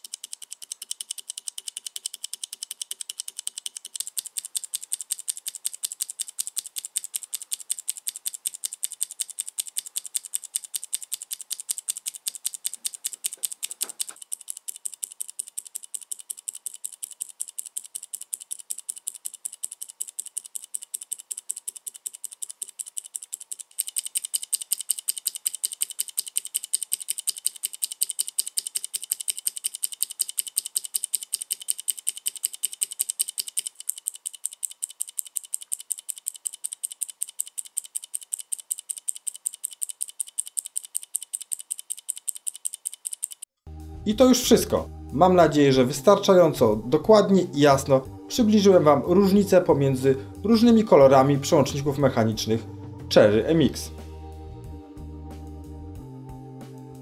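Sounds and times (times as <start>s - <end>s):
mechanical keyboard clacking: 0.0s - 43.5s.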